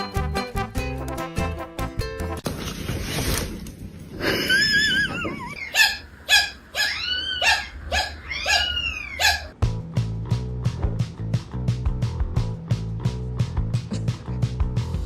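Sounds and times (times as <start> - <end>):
noisy rustle: 2.4 - 5.4
cat meowing: 6.8 - 9.5.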